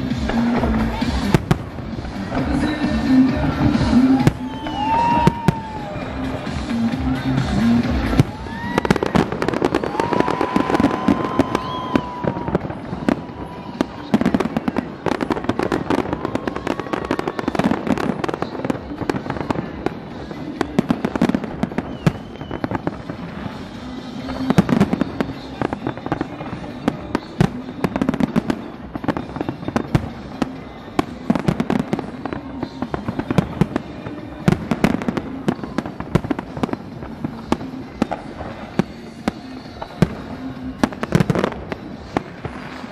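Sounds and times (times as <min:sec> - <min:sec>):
fireworks bangs and crackles: 0:00.0 - 0:42.9
music: 0:00.0 - 0:42.9
people's voices: 0:00.0 - 0:42.9.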